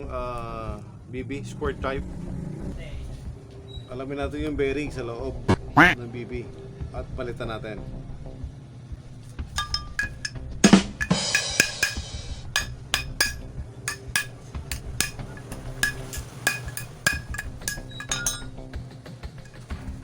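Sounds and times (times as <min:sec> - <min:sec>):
metal tools clinking: 0:09.6 - 0:18.6, 0:19.4 - 0:20.0.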